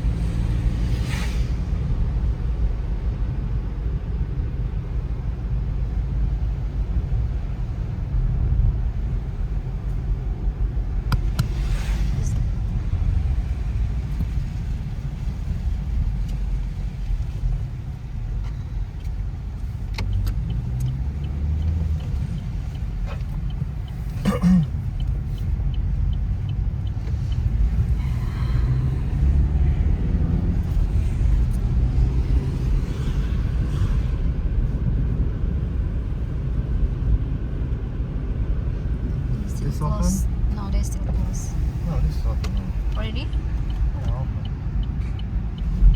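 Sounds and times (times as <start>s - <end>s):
car interior rumble: 0.0s - 45.9s
light ticks: 14.0s - 29.4s, 41.5s - 45.9s.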